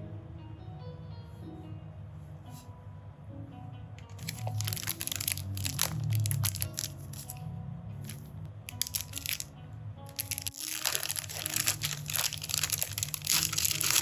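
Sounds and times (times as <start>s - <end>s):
soft background music: 0.0s - 14.0s
crackling and crunching: 4.1s - 7.4s, 8.0s - 9.5s, 10.1s - 14.0s.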